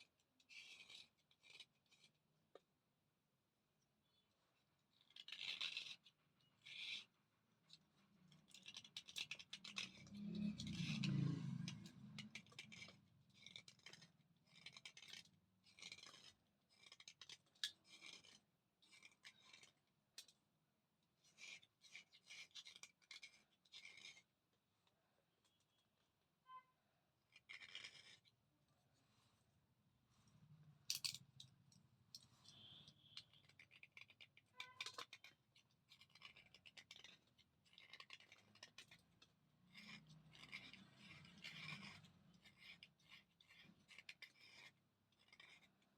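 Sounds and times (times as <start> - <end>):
slate pencil crunching: 7.8 - 20.2, 21.1 - 24.4, 27.2 - 29.4, 31.4 - 45.9.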